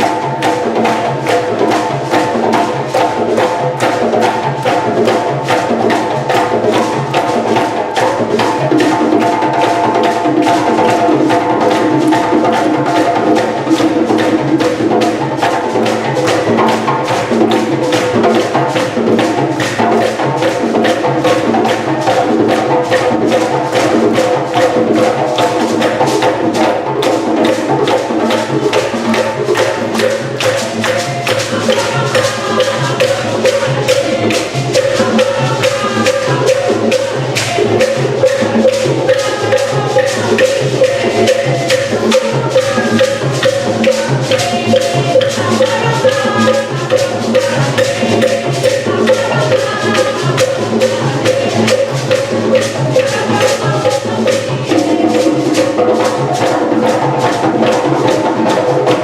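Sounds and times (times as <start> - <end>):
music with busy percussion beat: 0.0 - 59.0
wood-block-like strikes: 0.0 - 59.0.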